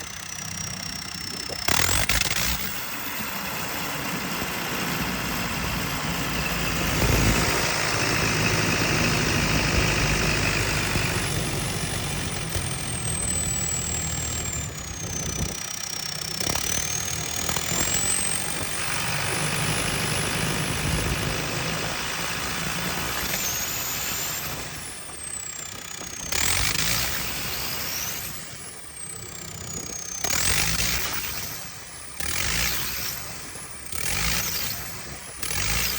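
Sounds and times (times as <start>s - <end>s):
faint high gliding whine: 0.0s - 25.4s
diesel engine misfiring: 0.0s - 35.9s.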